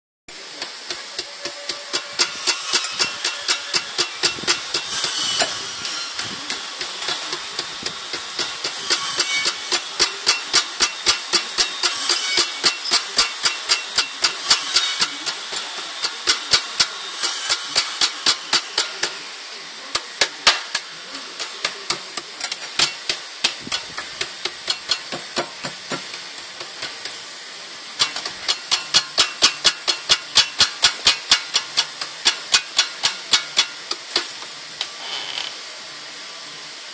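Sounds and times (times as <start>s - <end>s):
steady hiss: 0.3s - 36.9s.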